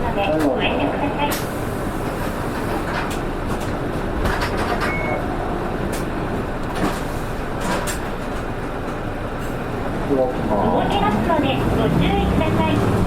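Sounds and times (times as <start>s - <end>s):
bus interior drone: 0.0s - 13.0s
high beep: 4.8s - 5.2s.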